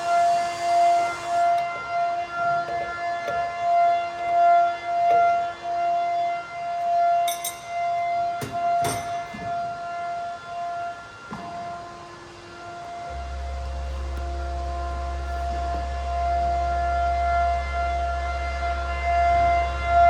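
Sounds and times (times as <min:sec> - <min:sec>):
router spindle whining: 0:00.0 - 0:03.1, 0:12.8 - 0:20.0.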